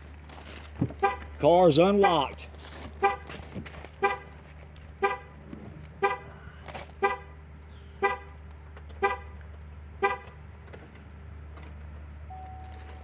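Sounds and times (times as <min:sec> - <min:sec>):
car horn honking: 0:01.0 - 0:02.4, 0:03.0 - 0:03.4, 0:04.0 - 0:04.4, 0:05.0 - 0:05.4, 0:06.0 - 0:06.4, 0:07.0 - 0:07.4, 0:08.0 - 0:08.4, 0:09.0 - 0:09.4, 0:10.0 - 0:10.4.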